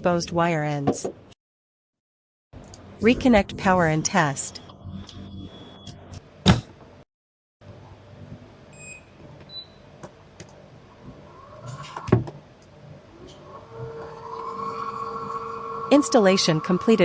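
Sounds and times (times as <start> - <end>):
roller blind motor humming: 10.4 - 17.0.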